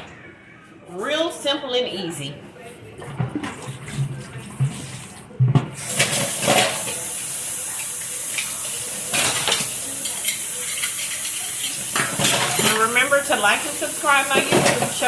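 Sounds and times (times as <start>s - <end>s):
dishes clattering: 3.0s - 7.1s, 8.3s - 13.3s, 14.3s - 15.0s.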